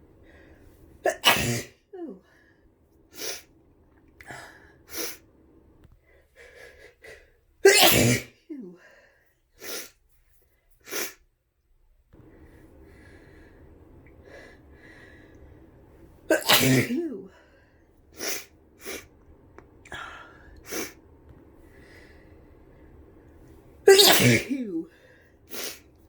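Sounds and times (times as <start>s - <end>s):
woman sneezing: 1.0s - 2.2s, 7.6s - 8.8s, 16.3s - 17.4s, 23.9s - 25.8s.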